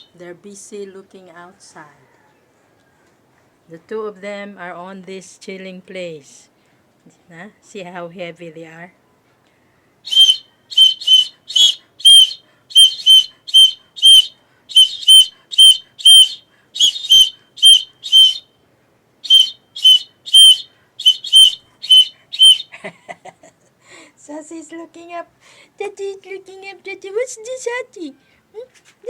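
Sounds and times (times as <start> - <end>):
whistle blasts: 10.1 - 18.6, 19.2 - 22.7.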